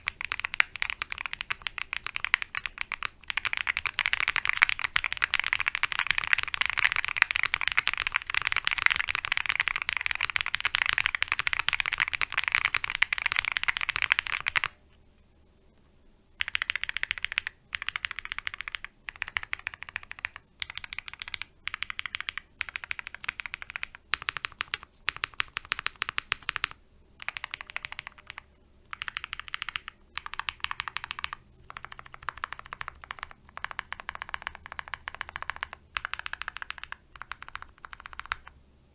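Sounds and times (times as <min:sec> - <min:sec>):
typing on mechanical keyboard: 0:00.0 - 0:14.8, 0:16.4 - 0:38.6.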